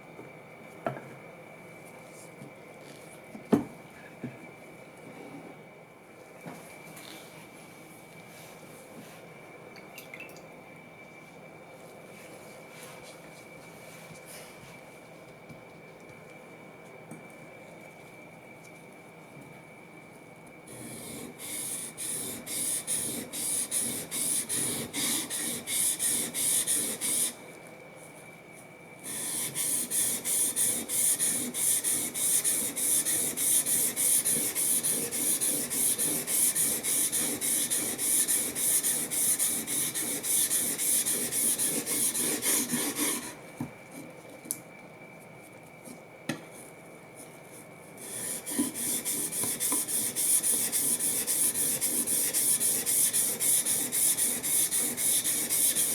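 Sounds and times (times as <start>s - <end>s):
plane blade rasping on sharpener: 20.9s - 27.3s, 29.1s - 43.4s, 48.1s - 55.9s.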